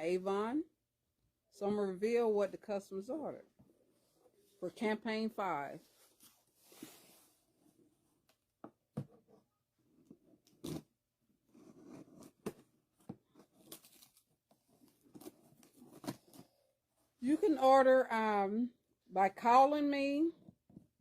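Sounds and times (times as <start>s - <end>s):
soft rustling of cardboard: 5.7s - 8.3s.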